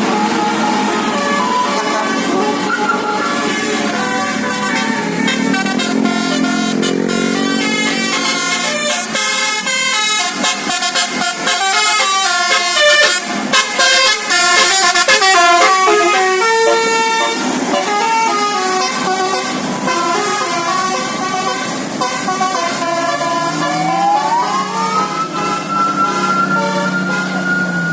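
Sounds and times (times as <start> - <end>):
rising siren-like glide: 0.0 - 8.3, 14.5 - 17.9, 23.3 - 27.9
multi-tone air horn playing a tune: 0.0 - 27.9.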